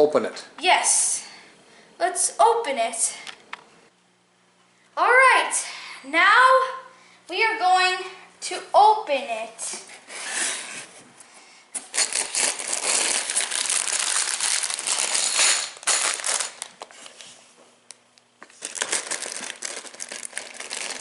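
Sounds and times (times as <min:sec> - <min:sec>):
cardboard and plastic crinkling: 0:11.8 - 0:17.3, 0:18.4 - 0:21.0.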